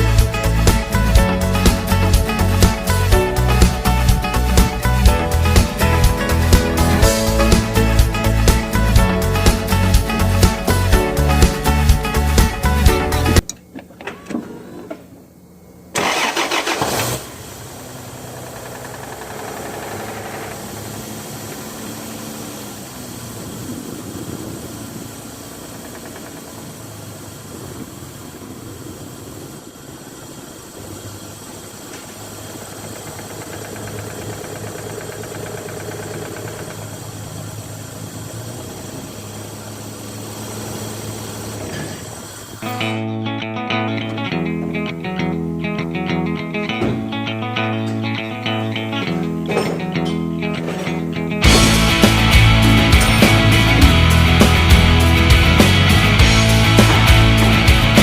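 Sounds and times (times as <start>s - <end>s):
car engine starting and idling: 0.0s - 58.0s.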